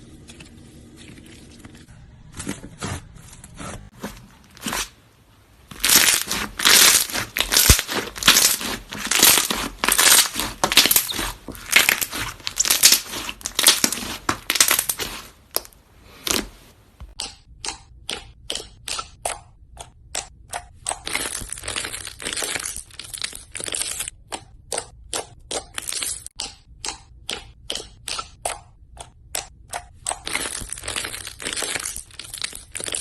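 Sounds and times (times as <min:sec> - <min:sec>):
slime clicking and crackling: 0:05.7 - 0:16.5.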